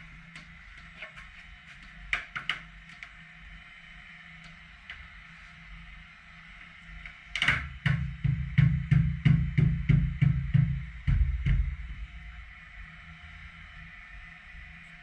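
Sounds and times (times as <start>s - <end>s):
heavy drum-like thumps: 7.7s - 12.3s.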